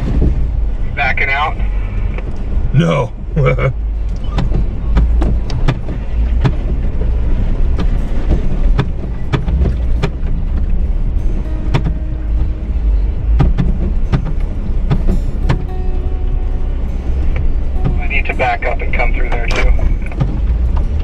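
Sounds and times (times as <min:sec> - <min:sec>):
vehicle engine and tyres rumbling: 0:00.0 - 0:21.0.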